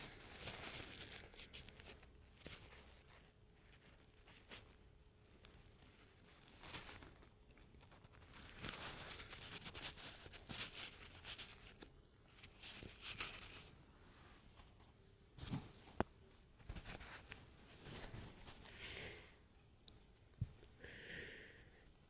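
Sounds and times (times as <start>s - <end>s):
woman sniffing and breathing: 20.8s - 21.8s.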